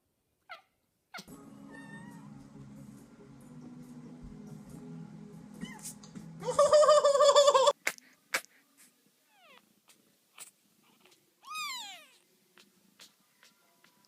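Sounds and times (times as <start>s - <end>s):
cat meowing: 0.5s - 2.3s, 10.9s - 12.2s.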